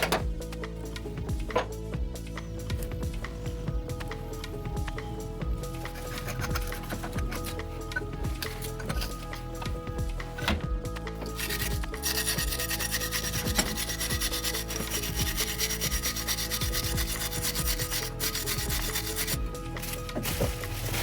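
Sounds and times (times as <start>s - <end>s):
rapid rubbing or sanding: 11.3s - 21.0s.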